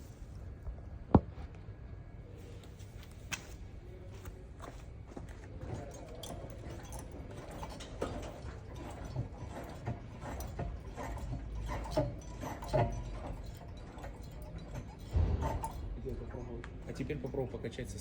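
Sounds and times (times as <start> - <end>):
loud thump: 15.1 - 16.8.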